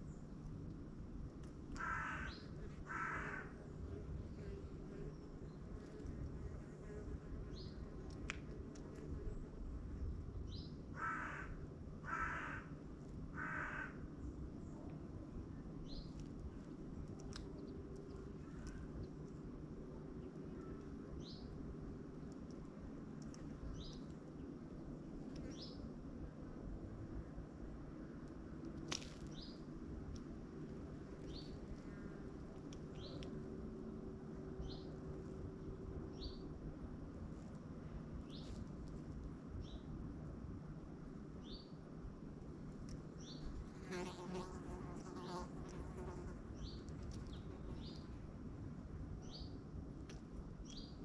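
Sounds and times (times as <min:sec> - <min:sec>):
low background hum: 0:00.0 - 0:51.0
low background rumble: 0:00.0 - 0:51.0
small songbird chirping: 0:23.7 - 0:24.1, 0:49.2 - 0:49.6, 0:50.6 - 0:51.0.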